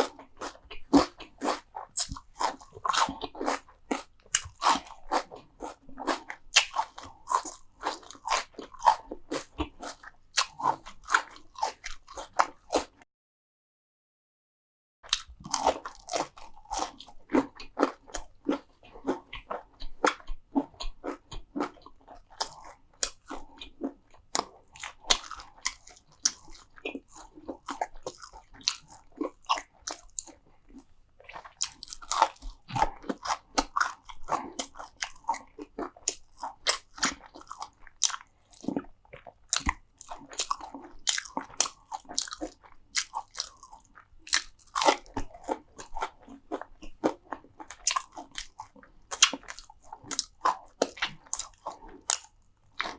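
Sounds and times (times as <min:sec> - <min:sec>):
crunchy chewing: 0:00.0 - 0:12.9, 0:15.1 - 0:52.9
wet mouth sounds: 0:15.1 - 0:52.9.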